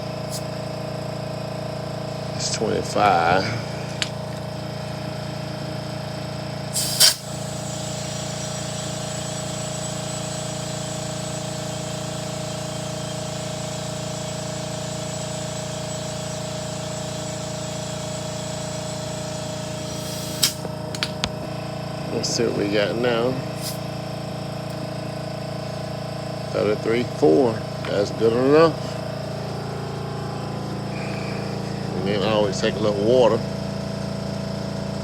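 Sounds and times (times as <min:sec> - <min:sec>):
air compressor running: 0:00.0 - 0:35.0
loud burst of noise: 0:06.7 - 0:20.8.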